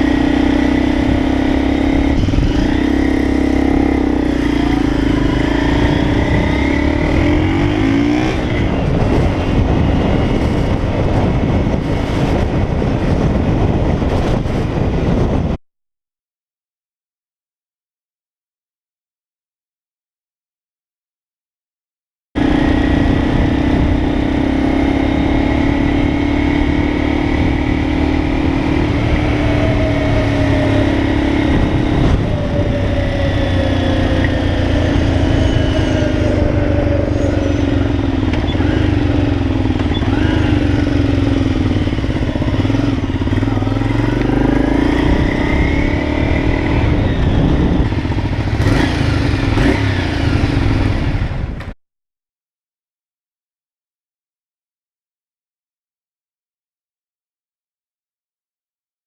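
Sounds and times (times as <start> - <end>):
motorcycle engine revving: 0.0 - 15.6, 22.4 - 51.8.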